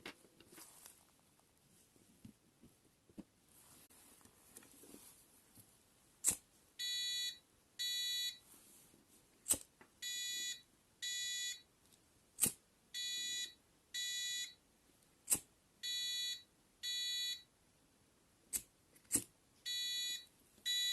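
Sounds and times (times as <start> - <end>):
alarm buzzer beeping: 19.7 - 20.9.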